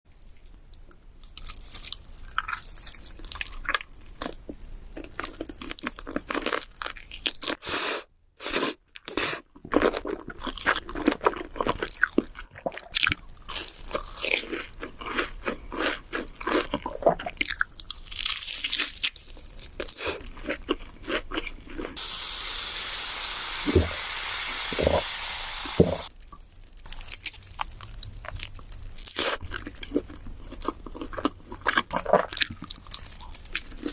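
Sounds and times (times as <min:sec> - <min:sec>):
crunching and chewing food: 0:00.1 - 0:07.7, 0:08.4 - 0:22.0, 0:26.1 - 0:33.9
steady hiss: 0:22.0 - 0:26.1.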